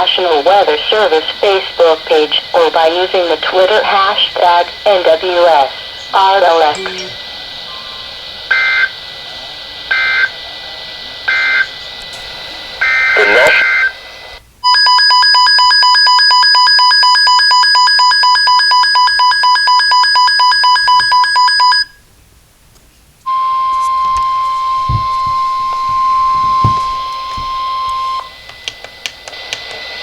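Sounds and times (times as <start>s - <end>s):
rapid alarm beeping: 8.5s - 9.0s, 9.9s - 10.3s, 11.3s - 11.7s, 14.6s - 22.0s, 23.3s - 28.4s
steady high tone: 23.3s - 28.3s.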